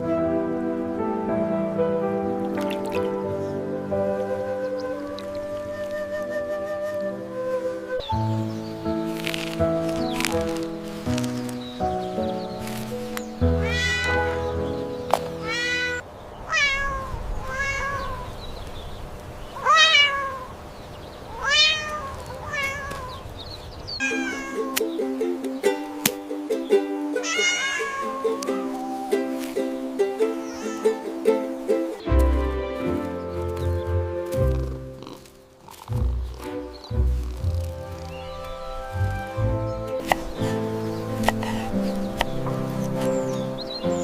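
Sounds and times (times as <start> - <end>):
light ukulele music: 0.0 - 16.0, 24.0 - 44.0
cat meowing: 13.5 - 14.7, 15.4 - 18.4, 19.6 - 20.5, 21.3 - 23.2, 24.0 - 24.8, 27.2 - 29.4, 30.4 - 31.0.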